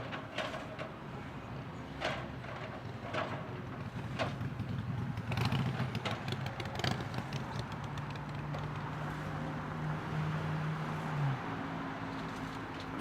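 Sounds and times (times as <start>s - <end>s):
machinery clanks and knocks: 0.0s - 1.1s, 1.9s - 4.5s
diesel engine hum: 0.0s - 13.0s.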